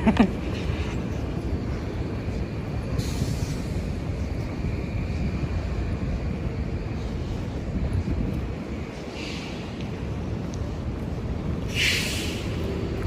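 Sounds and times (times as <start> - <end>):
short hiss: 11.7 - 12.5.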